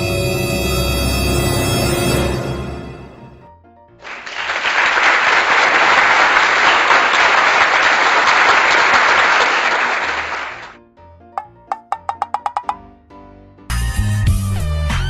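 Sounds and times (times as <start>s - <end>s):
crowd applauding: 4.0s - 10.8s.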